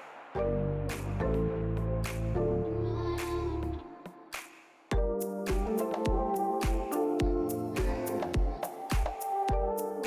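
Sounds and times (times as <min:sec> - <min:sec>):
background music with bass and beat: 0:04.9 - 0:10.0.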